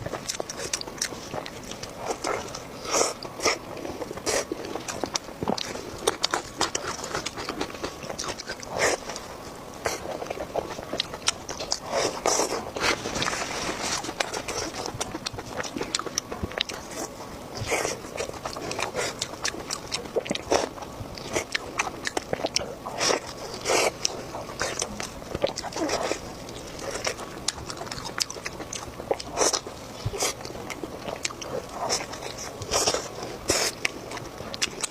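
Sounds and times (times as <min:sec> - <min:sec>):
wet chewing and mouth smacks: 0:00.0 - 0:34.9.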